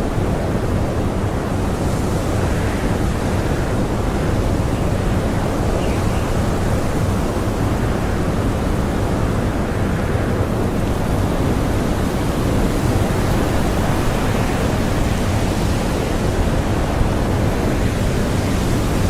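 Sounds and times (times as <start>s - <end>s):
blizzard wind blowing: 0.0s - 19.0s.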